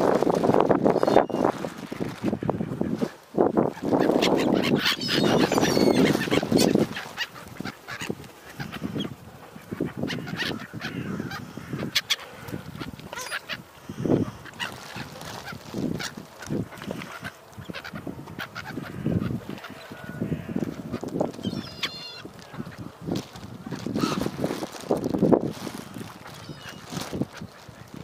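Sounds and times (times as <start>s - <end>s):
waterfowl honking: 9.7s - 12.3s, 13.1s - 22.8s.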